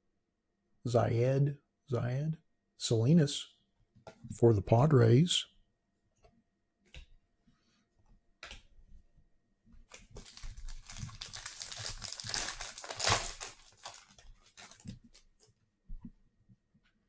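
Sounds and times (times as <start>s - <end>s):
plastic packaging crinkling: 9.9s - 15.5s.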